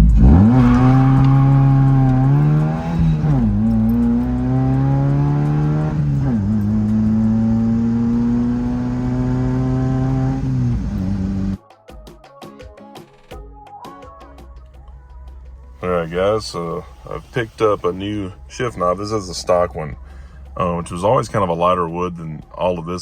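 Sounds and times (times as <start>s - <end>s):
car engine pulling through gears: 0.0s - 11.6s, 15.8s - 18.8s.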